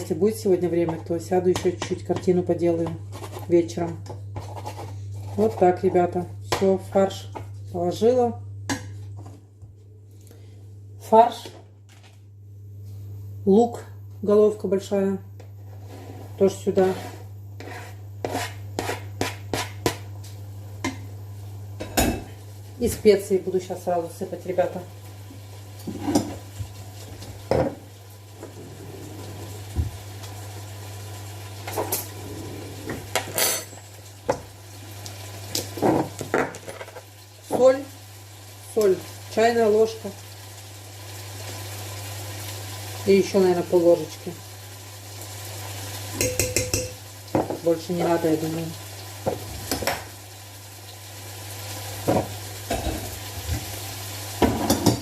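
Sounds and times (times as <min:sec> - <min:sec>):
meat and onion sizzling: 0:15.6 - 0:55.0
utensils knocking on frying pan: 0:46.2 - 0:47.6, 0:54.4 - 0:55.0.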